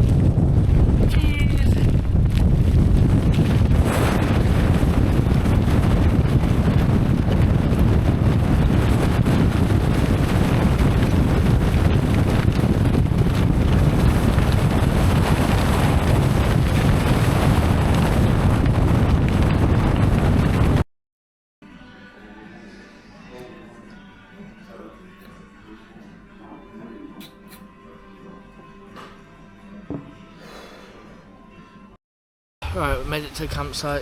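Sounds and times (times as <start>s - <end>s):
gusty wind on microphone: 0.0s - 20.8s.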